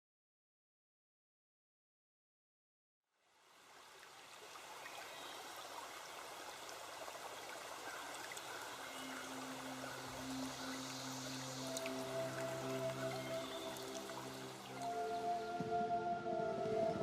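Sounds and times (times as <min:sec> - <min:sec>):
flowing stream water: 0:03.2 - 0:17.0
low sustained music notes: 0:08.4 - 0:17.0.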